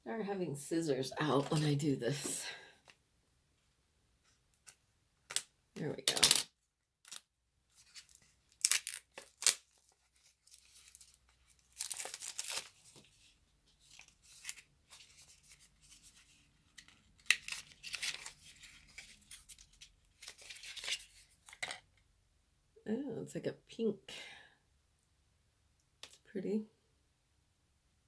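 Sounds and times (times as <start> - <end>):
packaging tearing and crinkling: 7.9 - 13.0, 17.2 - 21.1.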